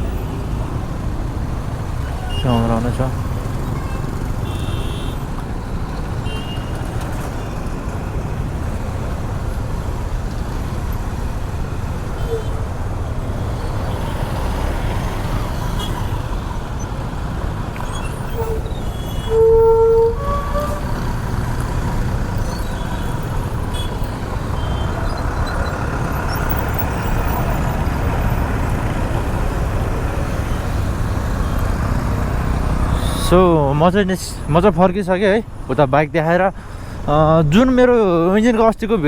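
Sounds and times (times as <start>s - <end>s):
motorcycle road and wind rumble: 0.0s - 39.0s
vehicle horn honk: 3.8s - 5.2s, 6.2s - 6.7s, 12.2s - 12.6s, 19.2s - 21.0s, 23.7s - 24.9s.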